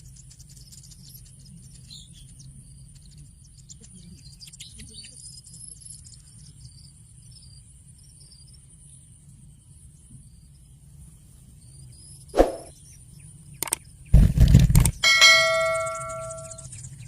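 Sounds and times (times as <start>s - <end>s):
sharp click: 13.6s - 13.8s.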